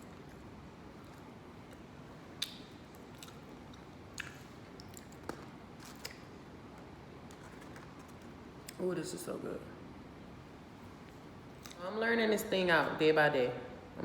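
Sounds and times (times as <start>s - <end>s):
person chewing food: 0.0s - 6.2s
mouth clicks and smacks: 1.7s - 5.4s.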